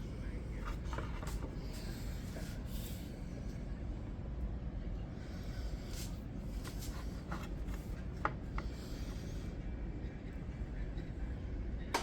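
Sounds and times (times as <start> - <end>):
steady low hum: 0.0 - 12.0
faint clicks and handling noises: 0.5 - 2.5.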